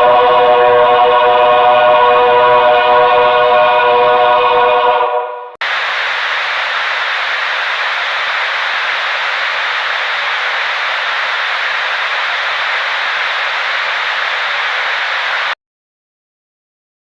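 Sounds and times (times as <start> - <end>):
static hiss: 5.6 - 15.6.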